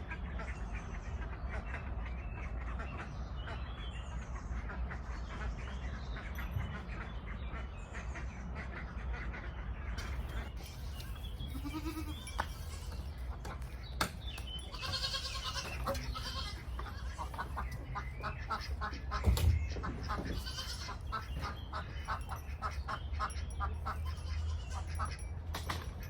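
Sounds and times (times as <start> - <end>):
goats bleating: 10.1 - 13.2, 14.7 - 17.7, 20.2 - 21.3.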